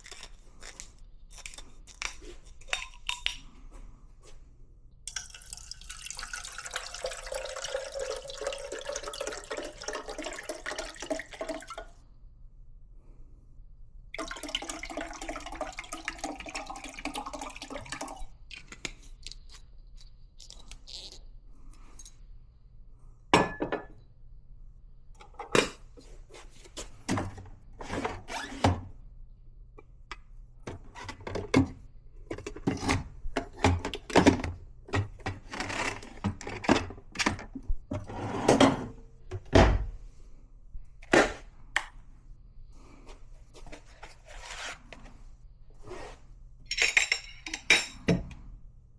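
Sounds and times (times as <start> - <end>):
water running: 5.1 - 11.9, 14.2 - 18.6
knocks and clinks of small parts: 46.7 - 48.1.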